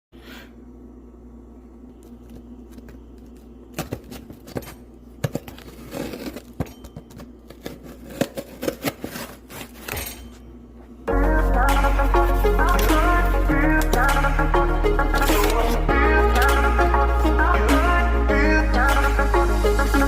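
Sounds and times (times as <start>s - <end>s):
low steady hum: 0.2s - 20.0s
packaging crinkling and tearing: 7.4s - 9.9s.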